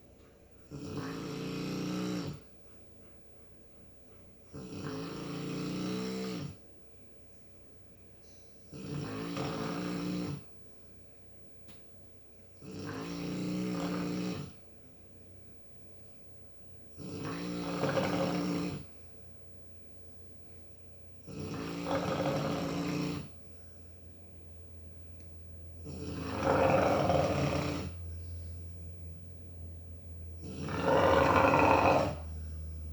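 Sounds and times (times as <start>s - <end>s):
person snoring: 4.6s - 6.6s
quiet breathing: 5.9s - 9.2s, 22.7s - 25.8s, 27.8s - 30.4s, 32.1s - 32.9s.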